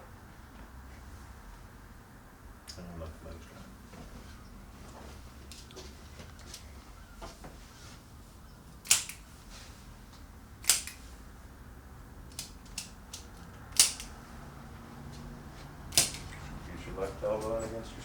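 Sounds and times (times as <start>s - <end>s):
spring-loaded instrument clicks: 13.8s - 14.1s.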